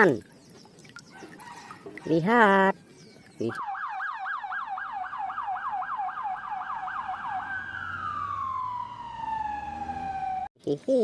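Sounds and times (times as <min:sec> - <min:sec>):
toy siren warbling and wailing: 0:03.6 - 0:10.5.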